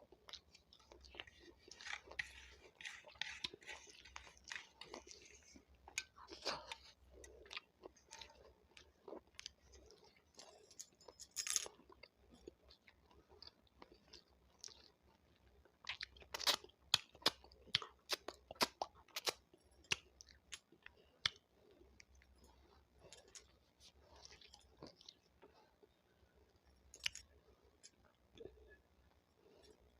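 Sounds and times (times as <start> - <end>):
crunchy chewing: 0.1 - 11.0.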